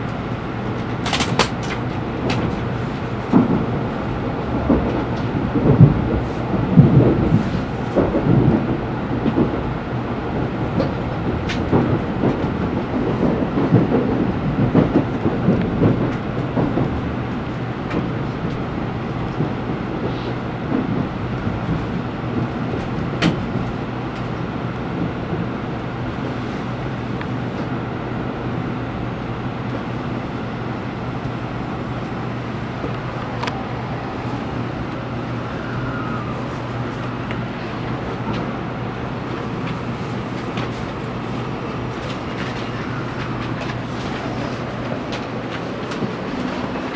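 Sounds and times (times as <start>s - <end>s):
train interior rumbling and knocks: 0.0s - 46.9s
train steady hum: 0.0s - 46.9s.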